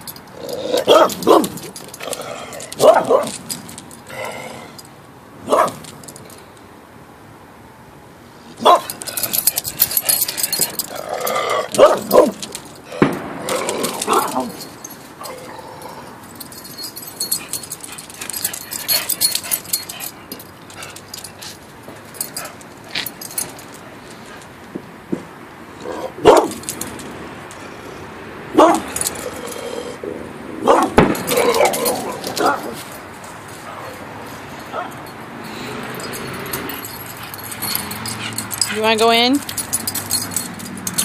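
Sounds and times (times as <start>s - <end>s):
dog barking: 0.8s - 1.6s, 2.8s - 3.3s, 5.4s - 5.8s, 8.6s - 9.0s, 11.4s - 12.4s, 14.1s - 14.5s, 25.9s - 26.6s, 28.6s - 29.0s, 30.6s - 32.8s
crackling fireworks: 13.0s - 14.1s.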